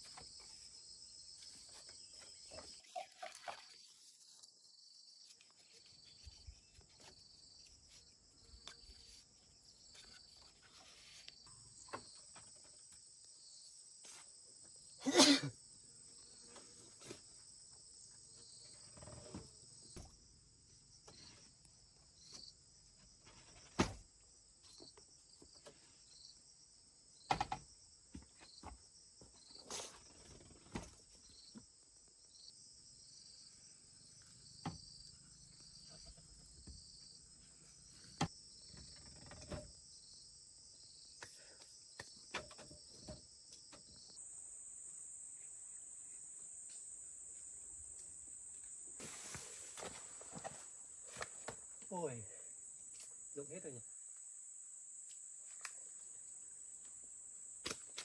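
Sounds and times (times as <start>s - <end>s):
insect chorus chirring: 0.0s - 58.0s.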